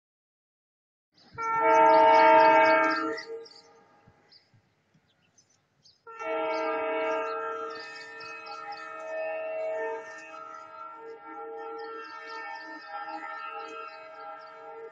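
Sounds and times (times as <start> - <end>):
locomotive air horn blasts: 1.4 - 3.9, 6.1 - 14.9.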